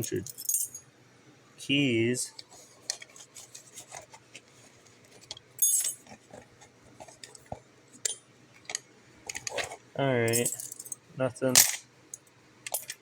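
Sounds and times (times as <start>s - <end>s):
metal keys jangling: 5.6s - 6.0s, 10.3s - 11.0s.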